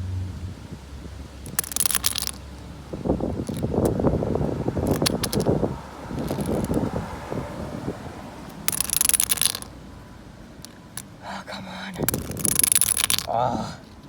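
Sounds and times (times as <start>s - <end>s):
padlock shackle clinking and rattling: 1.4s - 2.7s, 3.4s - 4.0s, 4.8s - 6.9s, 8.4s - 9.7s, 10.6s - 11.2s, 12.0s - 14.0s.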